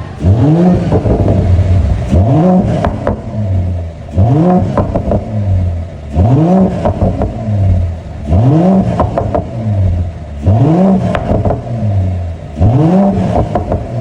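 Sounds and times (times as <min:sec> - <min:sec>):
car engine revving: 0:00.0 - 0:14.0
exhaust crackles: 0:00.0 - 0:14.0.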